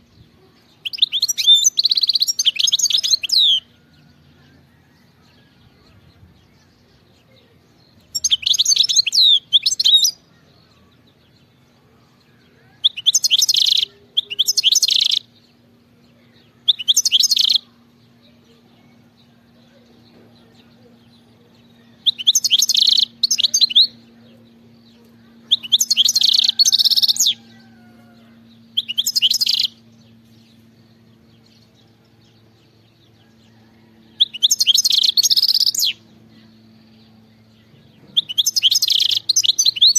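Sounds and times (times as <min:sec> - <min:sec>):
bird twittering song: 0:00.0 - 0:39.9
faint low hum: 0:00.0 - 0:39.9.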